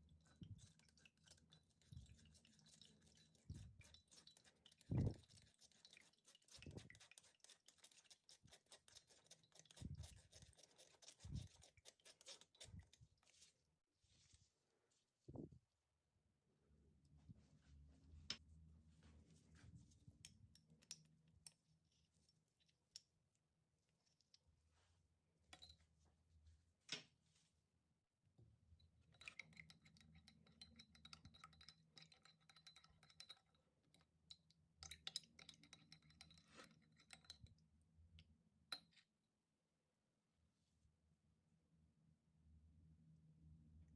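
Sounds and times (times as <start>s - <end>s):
kitchen utensils clicking and scraping: 0.0s - 13.0s, 29.2s - 33.6s, 34.8s - 37.5s.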